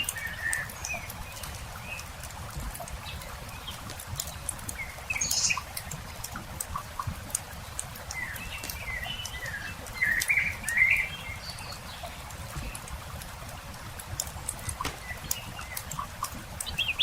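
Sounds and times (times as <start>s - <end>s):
songbird singing: 0.0s - 2.1s, 3.0s - 5.9s, 7.6s - 12.9s, 14.4s - 17.0s
campfire crackling and popping: 12.3s - 16.8s.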